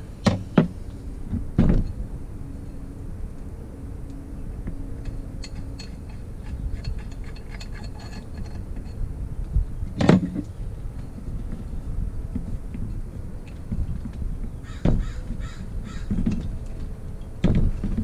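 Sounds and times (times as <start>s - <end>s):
low rumble: 0.0s - 18.0s.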